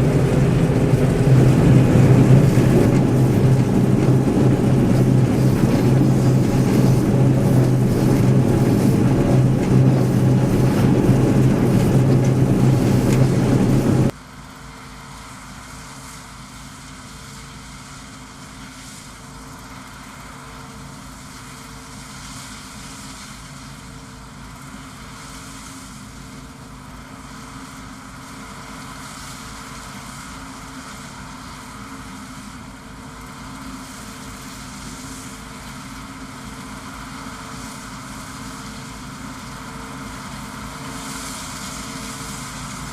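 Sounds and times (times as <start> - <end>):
combine harvester engine hum: 0.0 - 14.1
pulsing whine: 0.0 - 14.1.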